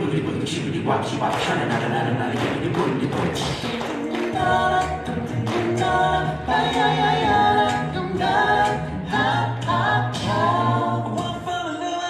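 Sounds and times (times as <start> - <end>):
voices singing in harmony: 1.8 - 12.0.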